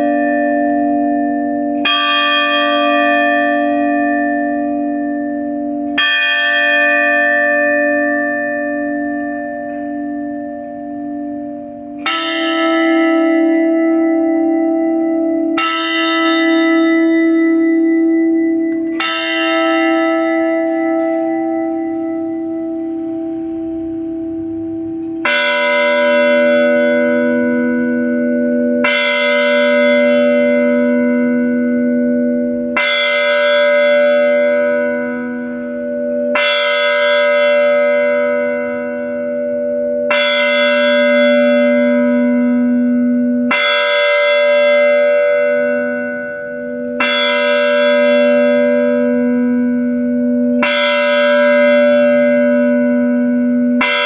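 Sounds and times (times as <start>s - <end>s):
church bell tolling: 0.0s - 54.0s.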